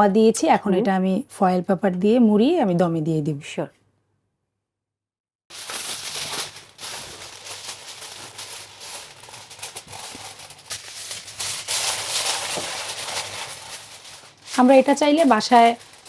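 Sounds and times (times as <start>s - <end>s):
aluminium foil crinkling: 5.5s - 16.0s.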